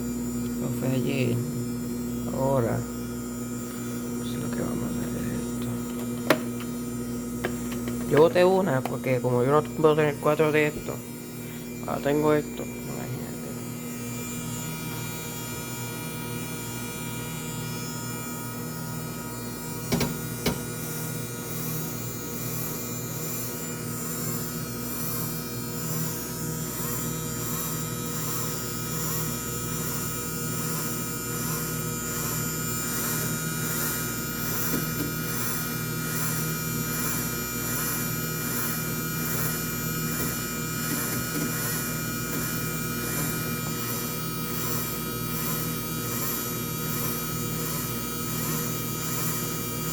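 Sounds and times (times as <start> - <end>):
washing machine motor humming: 0.0 - 49.9
washing machine churning: 19.8 - 21.5.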